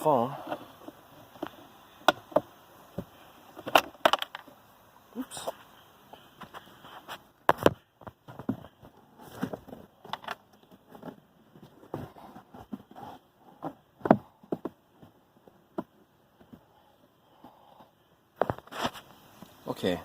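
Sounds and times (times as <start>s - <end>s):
plastic clicks and knocks: 1.4s - 4.5s.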